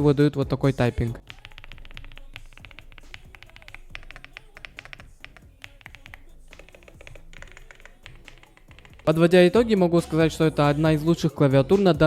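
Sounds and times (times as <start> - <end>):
mechanical keyboard typing: 1.2 - 9.5.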